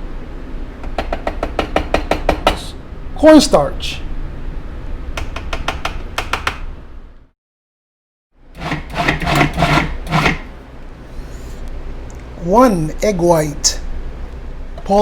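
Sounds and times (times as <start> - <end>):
utensils knocking on food processor bowl: 0.8 - 2.6, 8.6 - 10.5.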